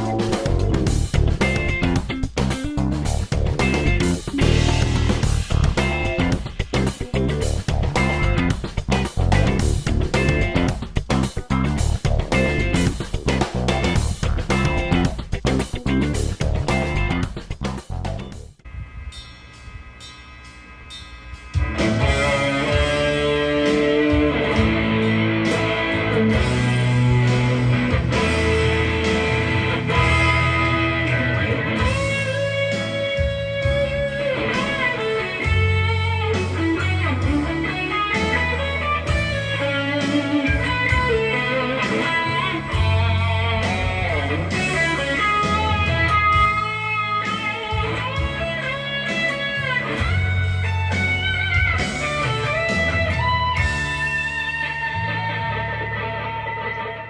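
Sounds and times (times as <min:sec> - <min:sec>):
blues-rock lead electric guitar: 0:00.0 - 0:18.4, 0:21.5 - 0:57.0
drum beat: 0:00.0 - 0:18.6, 0:19.2 - 0:54.6
bass line: 0:00.0 - 0:57.0.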